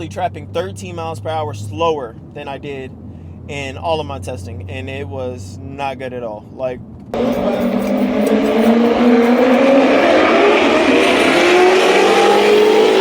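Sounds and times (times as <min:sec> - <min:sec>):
car engine accelerating hard: 0:07.2 - 0:13.0
loud rushing noise: 0:07.2 - 0:13.0.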